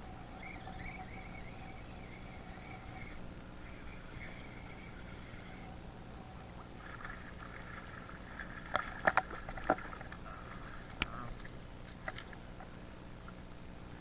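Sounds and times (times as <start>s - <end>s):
water splashing and sloshing: 2.3s - 12.7s.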